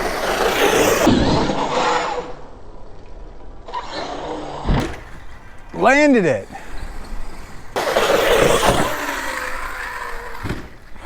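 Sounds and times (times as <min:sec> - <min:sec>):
electric toy truck motor running: 0:00.0 - 0:01.0, 0:04.0 - 0:11.0
truck landing thump: 0:04.6 - 0:05.8, 0:07.7 - 0:11.0.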